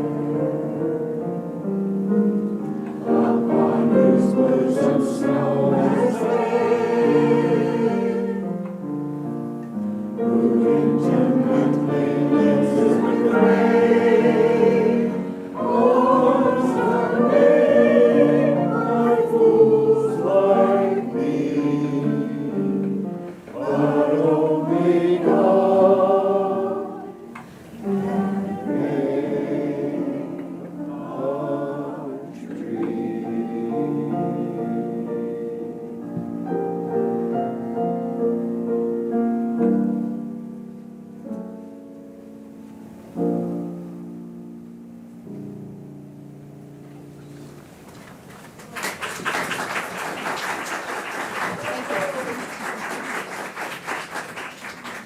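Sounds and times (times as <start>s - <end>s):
choir singing: 0.0s - 1.2s, 2.9s - 8.8s, 10.2s - 37.2s.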